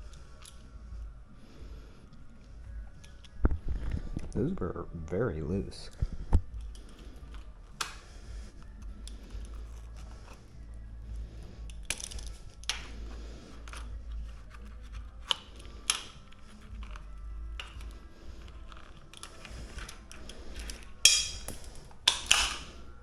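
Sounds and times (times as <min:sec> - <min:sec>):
low steady hum: 0:00.0 - 0:23.0
small parts clattering: 0:06.5 - 0:23.0.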